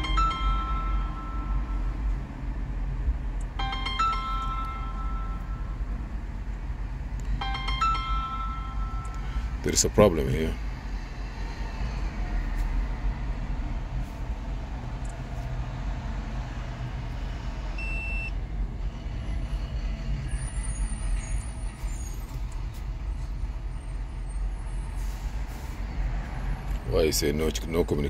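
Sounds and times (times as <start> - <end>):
short electronic beep: 17.8 - 18.4.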